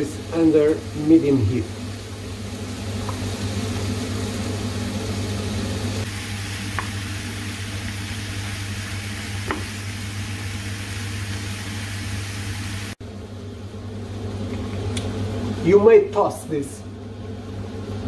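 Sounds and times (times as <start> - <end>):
food sizzling in oil: 0.0 - 13.0.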